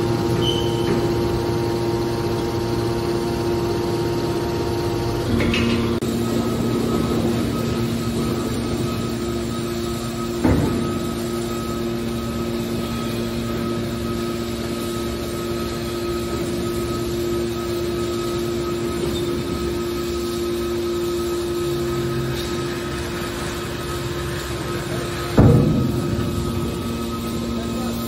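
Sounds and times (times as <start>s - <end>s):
baler power unit hum: 0.0s - 28.0s
sharp loud bang: 25.4s - 27.2s.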